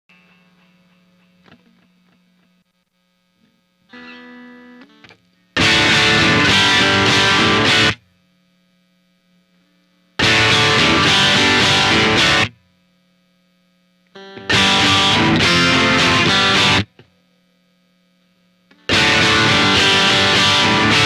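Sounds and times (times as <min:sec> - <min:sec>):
distorted electric guitar strumming: 0:00.1 - 0:08.1, 0:10.2 - 0:12.6, 0:14.1 - 0:17.2, 0:18.7 - 0:21.0
amplifier hum: 0:00.1 - 0:21.0.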